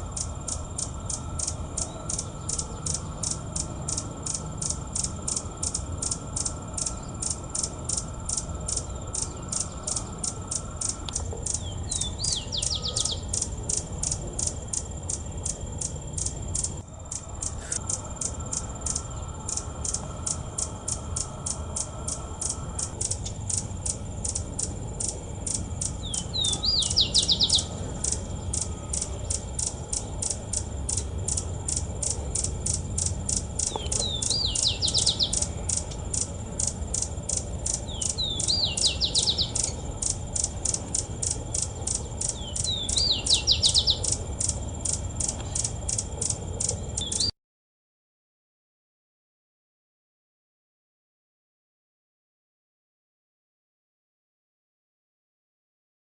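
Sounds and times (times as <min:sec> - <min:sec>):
insects chirping: 0:00.0 - 0:47.3
bird calls: 0:00.2 - 0:14.6, 0:25.5 - 0:44.6, 0:45.2 - 0:47.3.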